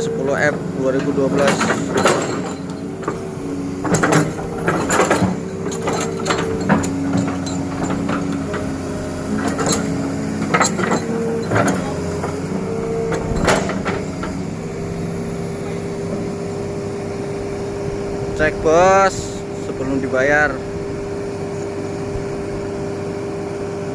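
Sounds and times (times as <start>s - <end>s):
excavator diesel engine running: 0.0s - 23.9s
sharp clicks and knocks: 1.3s - 3.2s, 3.8s - 8.7s, 9.4s - 12.4s.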